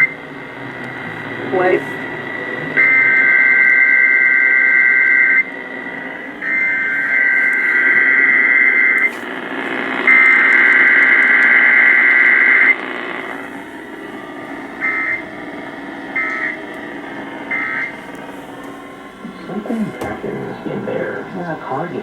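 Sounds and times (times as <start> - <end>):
radio hiss: 0.0 - 22.0
short data bursts: 6.4 - 12.8, 17.5 - 18.0
buzzy two-tone data bursts: 17.4 - 18.0.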